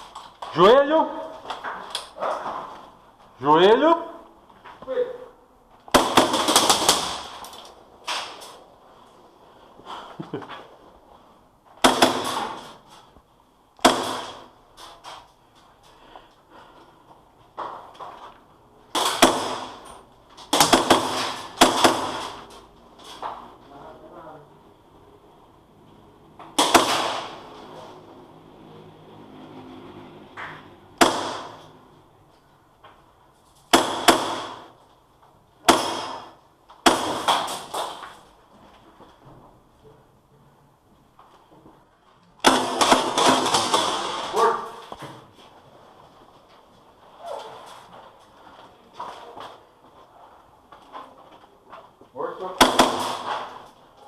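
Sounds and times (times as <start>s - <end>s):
airsoft gun shots with echo: 11.8s - 12.7s, 13.8s - 14.5s, 19.0s - 19.8s, 20.5s - 22.4s, 26.6s - 27.5s, 31.0s - 31.6s, 33.7s - 34.7s, 35.6s - 37.9s, 42.4s - 44.6s, 52.6s - 53.6s.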